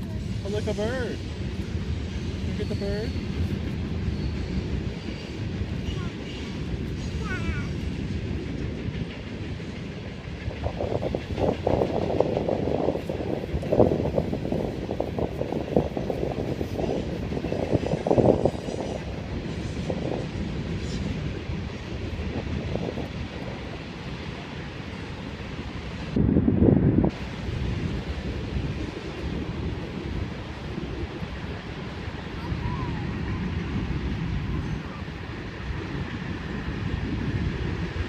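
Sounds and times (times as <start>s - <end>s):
train wheels clattering on rails: 0.0s - 26.2s.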